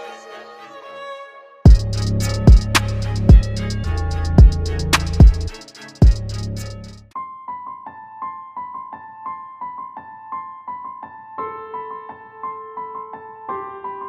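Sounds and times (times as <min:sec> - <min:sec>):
music beat: 0:01.7 - 0:07.1
soft piano melody: 0:01.7 - 0:14.0.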